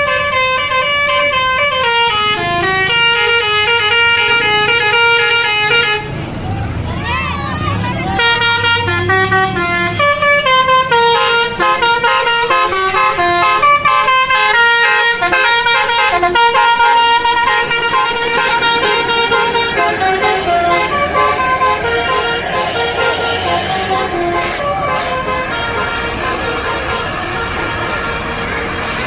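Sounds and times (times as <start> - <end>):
bus musical horn melody: 0.0 - 6.3, 8.0 - 29.0.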